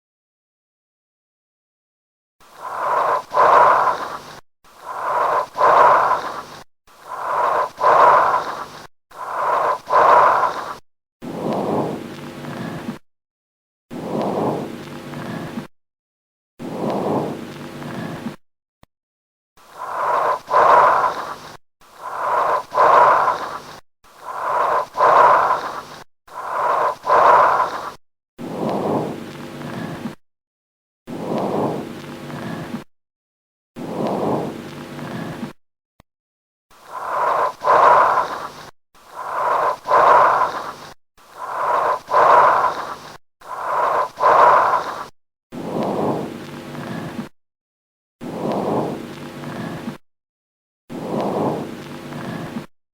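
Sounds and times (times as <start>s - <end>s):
bronchial breathing: 2.5s - 10.8s, 19.6s - 28.0s, 36.8s - 45.1s.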